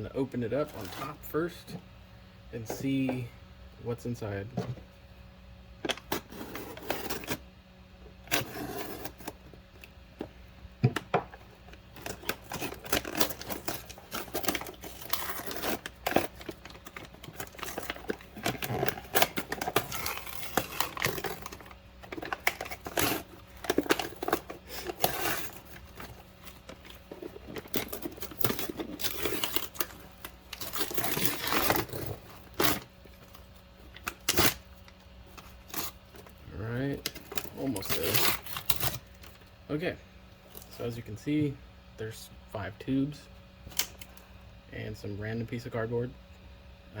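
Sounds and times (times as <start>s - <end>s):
cardboard tearing and crinkling: 5.9s - 7.4s, 8.3s - 9.4s, 11.8s - 34.6s, 35.4s - 36.4s, 37.0s - 39.3s.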